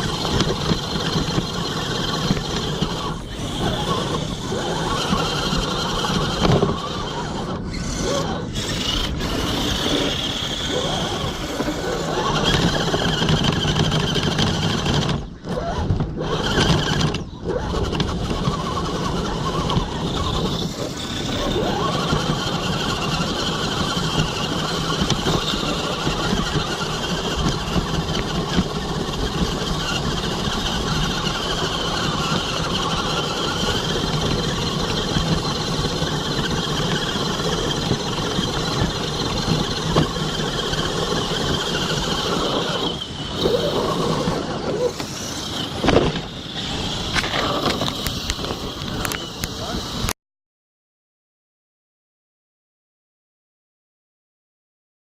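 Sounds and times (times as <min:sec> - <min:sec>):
electric motor whining: 0:00.0 - 0:50.1.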